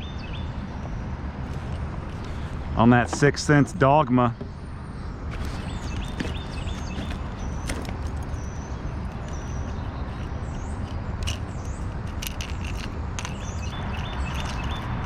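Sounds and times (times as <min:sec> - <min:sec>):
small birds chirping: 0:03.5 - 0:15.0.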